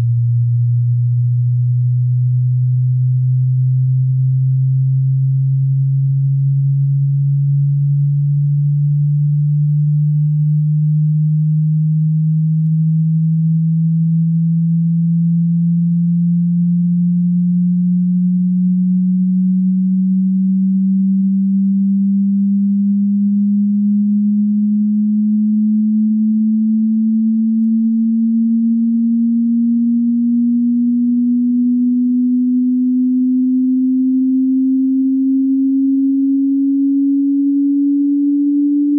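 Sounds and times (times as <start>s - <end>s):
sine tone sweeping upward: 0.0s - 38.9s.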